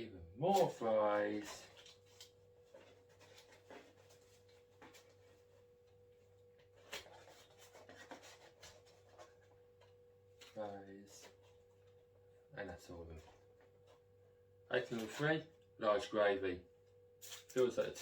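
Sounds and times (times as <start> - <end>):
faint steady hum: 0.0 - 18.0
paper cartons tapping and rustling: 0.6 - 5.7, 6.6 - 11.6.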